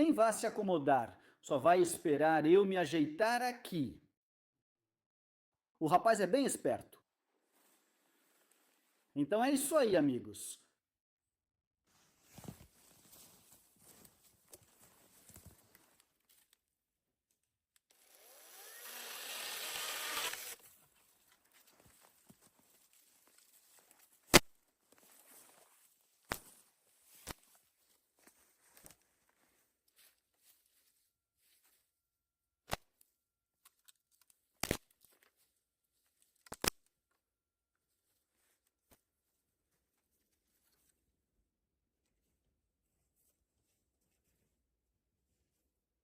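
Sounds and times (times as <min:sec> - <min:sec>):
faint rustling and handling: 0:07.4 - 0:09.2, 0:11.9 - 0:16.8, 0:20.6 - 0:32.0, 0:33.0 - 0:36.4, 0:37.8 - 0:41.3, 0:42.0 - 0:45.7
electric chainsaw running: 0:17.9 - 0:20.6.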